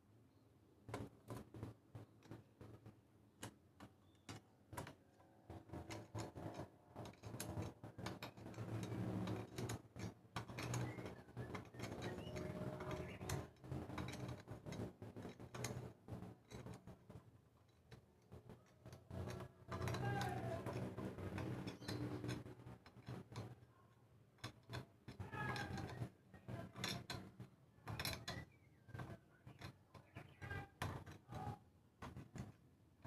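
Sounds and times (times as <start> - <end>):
metallic clicks and taps: 24.4 - 32.6.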